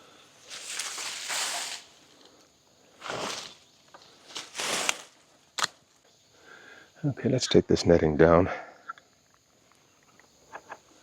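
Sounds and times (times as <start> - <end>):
dry plants rustling: 0.0 - 6.0.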